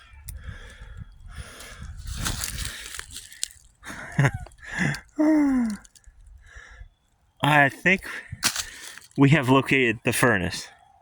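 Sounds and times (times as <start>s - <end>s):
rustling: 1.9s - 6.2s, 8.4s - 9.2s
man making wordless sounds: 4.0s - 5.9s, 7.4s - 8.4s, 9.2s - 10.7s.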